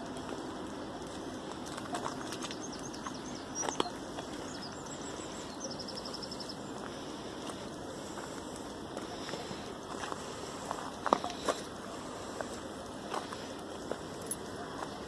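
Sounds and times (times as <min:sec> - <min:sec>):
steady background noise: 0:00.0 - 0:15.0
small birds chirping: 0:01.3 - 0:08.4.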